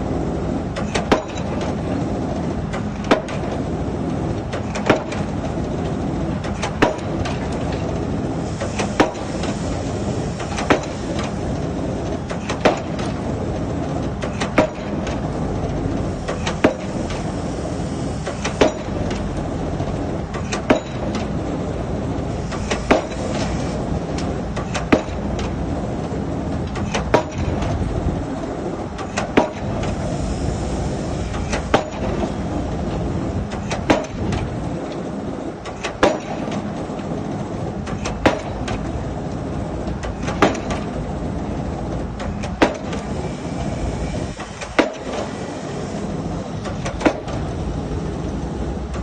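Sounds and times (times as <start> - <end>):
rig engine running: 0.0 - 49.0
pile driver hammer bangs: 0.8 - 1.7, 3.0 - 3.6, 4.5 - 5.3, 6.6 - 7.5, 10.5 - 11.0, 12.3 - 13.2, 14.2 - 15.1, 18.4 - 19.2, 20.4 - 21.4, 22.6 - 23.4, 24.6 - 25.4, 26.8 - 27.6, 29.1 - 29.8, 31.4 - 32.3, 33.5 - 34.5, 35.8 - 36.7, 38.0 - 38.8, 40.2 - 40.9, 42.4 - 43.1, 44.4 - 45.4.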